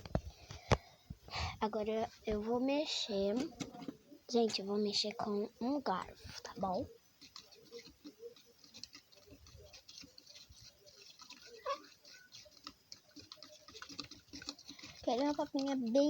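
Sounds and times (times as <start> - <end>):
fork tapping and scraping container: 5.9 - 16.0.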